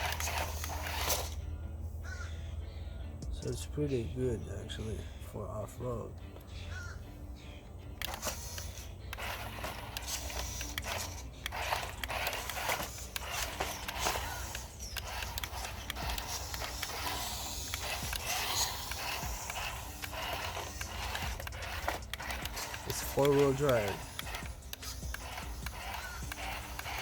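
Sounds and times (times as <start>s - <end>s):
small electric motor whirring: 0.0s - 2.2s, 7.9s - 27.0s
crackling and clicking: 8.0s - 27.0s.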